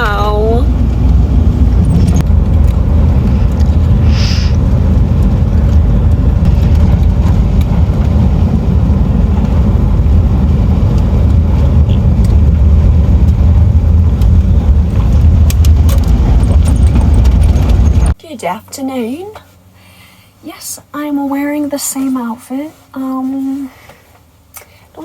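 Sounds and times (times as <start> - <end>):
van engine and road drone: 0.0 - 25.0
light rattles and clicks: 14.1 - 18.2.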